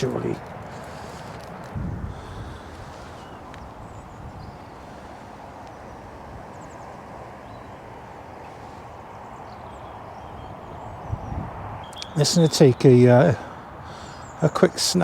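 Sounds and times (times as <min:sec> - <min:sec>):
faint bird chirps: 0:09.2 - 0:14.6.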